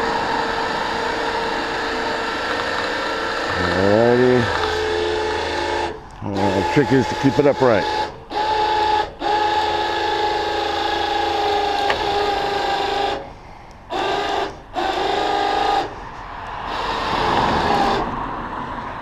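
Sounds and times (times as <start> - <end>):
heavy wood scraping as dragged: 0.0 - 7.4
electric winch motor whining: 0.0 - 18.5.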